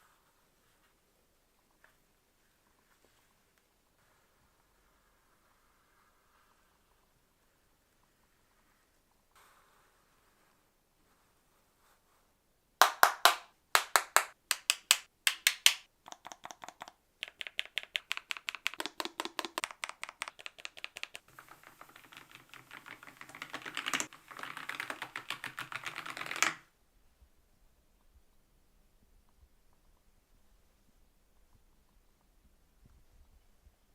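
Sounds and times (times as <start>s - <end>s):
typing on mechanical keyboard: 14.0s - 26.6s.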